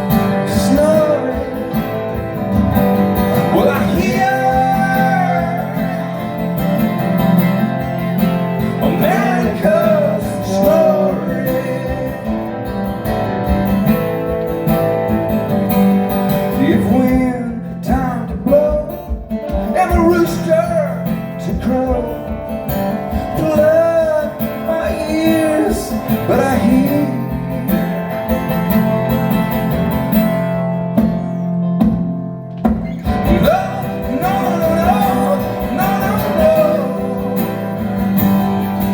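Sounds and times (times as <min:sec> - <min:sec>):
man singing: 0:00.0 - 0:02.6, 0:03.2 - 0:07.1, 0:08.6 - 0:13.0, 0:16.5 - 0:28.4, 0:32.9 - 0:38.9
guitar: 0:00.0 - 0:38.9.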